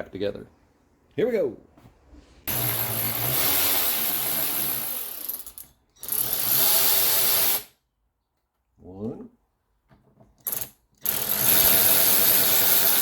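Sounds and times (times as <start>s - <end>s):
power tool running: 2.5s - 7.7s, 10.5s - 13.0s.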